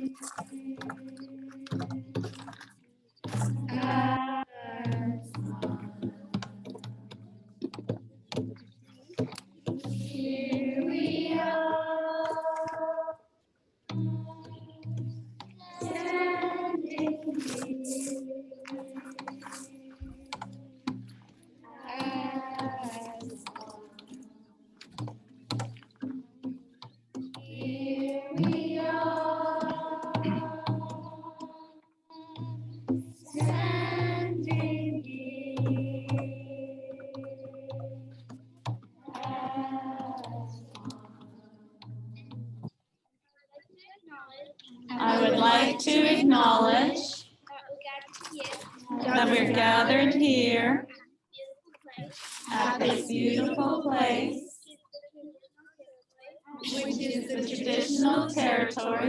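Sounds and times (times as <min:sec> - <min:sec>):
voices: 0:00.0 - 0:07.6, 0:08.8 - 0:13.2, 0:13.9 - 0:26.2, 0:27.4 - 0:38.3, 0:39.0 - 0:42.3, 0:43.4 - 0:59.0
person singing: 0:15.7 - 0:20.4, 0:21.7 - 0:24.1, 0:44.9 - 0:47.2, 0:48.9 - 0:50.8, 0:52.4 - 0:54.4, 0:56.7 - 0:59.0.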